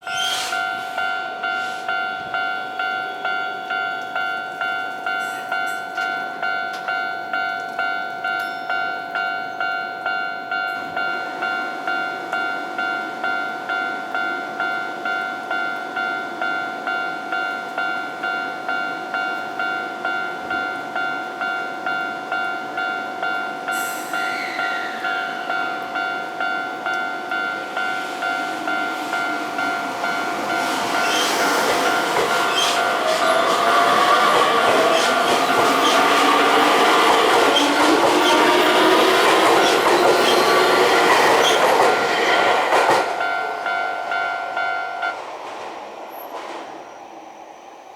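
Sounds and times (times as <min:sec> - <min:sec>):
approaching train rush: 0:00.0 - 0:03.0, 0:23.7 - 0:47.9
level crossing warning bell: 0:00.1 - 0:45.4.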